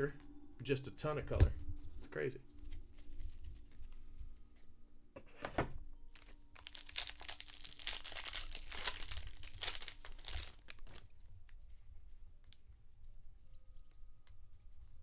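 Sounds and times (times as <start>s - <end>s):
wrapper tearing and crinkling: 6.1s - 11.1s.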